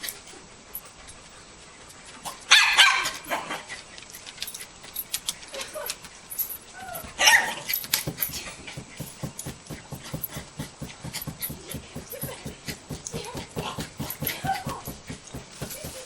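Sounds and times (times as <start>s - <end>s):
dog barking: 2.5s - 3.6s.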